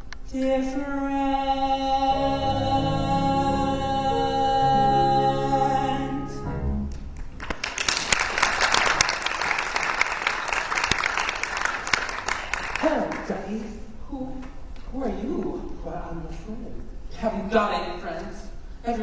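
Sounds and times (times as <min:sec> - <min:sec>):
sung song with accompaniment: 0:00.2 - 0:07.4
audience applause: 0:07.2 - 0:13.3.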